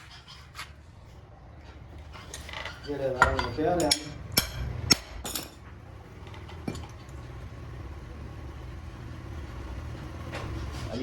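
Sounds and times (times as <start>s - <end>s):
machine rumble: 4.2s - 11.0s.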